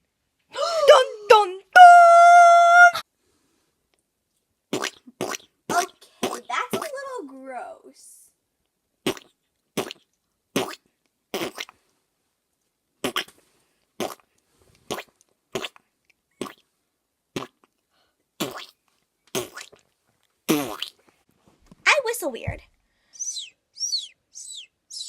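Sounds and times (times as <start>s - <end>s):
person making mouth sound effects: 4.7s - 6.9s, 9.0s - 11.8s, 13.0s - 13.3s, 14.0s - 14.3s, 14.9s - 15.8s, 16.4s - 16.7s, 17.4s - 17.8s, 18.4s - 19.8s, 20.5s - 21.0s, 23.2s - 25.0s.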